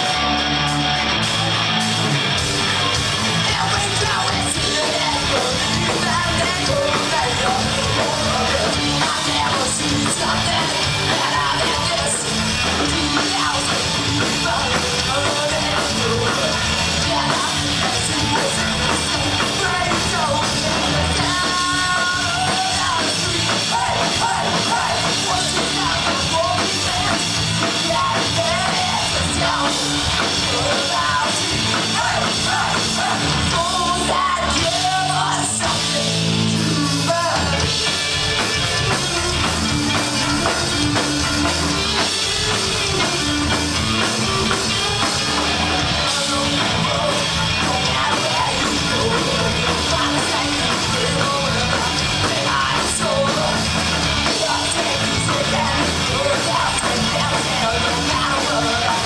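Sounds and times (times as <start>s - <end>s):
live rock band playing: 0.0s - 59.0s
person singing and shouting: 2.6s - 38.1s, 38.8s - 59.0s.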